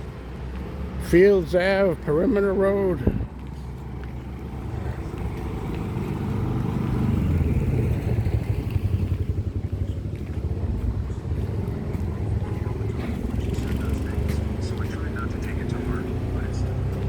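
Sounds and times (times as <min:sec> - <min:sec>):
motorcycle engine passing: 0:03.7 - 0:17.0.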